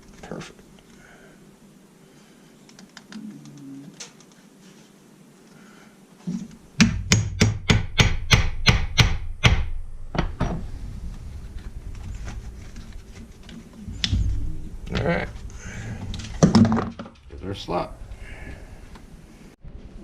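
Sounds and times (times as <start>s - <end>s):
hammer striking punch: 6.8s - 10.4s.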